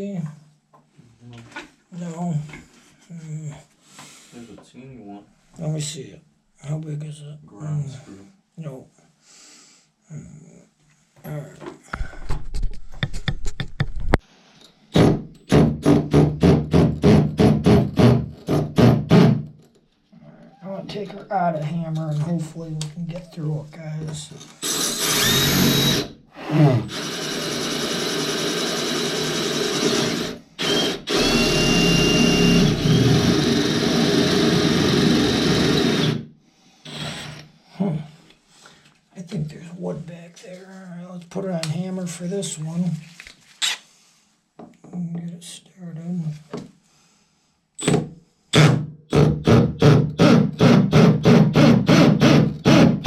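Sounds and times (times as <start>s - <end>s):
power drill boring into tile: 24.6s - 36.2s, 36.9s - 37.4s, 48.6s - 53.0s.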